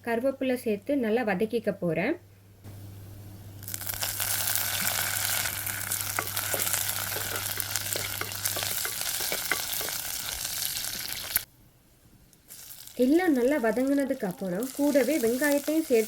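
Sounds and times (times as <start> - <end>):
hot oil sizzling in a pan: 3.6 - 11.5, 12.5 - 16.0
spoon clicking in a pan: 6.1 - 10.1.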